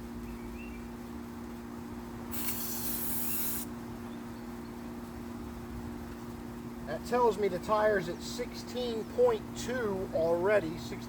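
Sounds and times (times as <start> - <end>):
air hissing from tire valve: 2.3 - 3.7.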